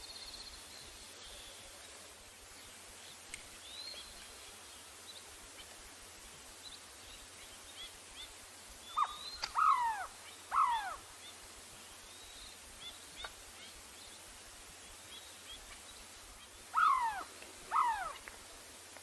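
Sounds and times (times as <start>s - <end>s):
steady background hiss: 0.0s - 19.0s
bird calls arching in pitch: 8.9s - 11.0s, 16.7s - 18.2s
bird chirps: 8.9s - 11.0s.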